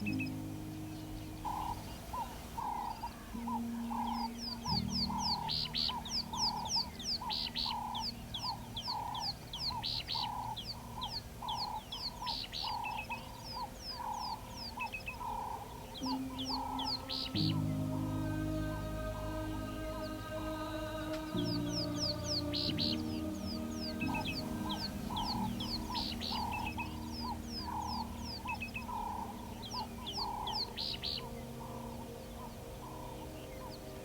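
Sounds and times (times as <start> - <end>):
low hooting bird calls: 0.0 - 34.0
low steady drone: 0.0 - 34.0.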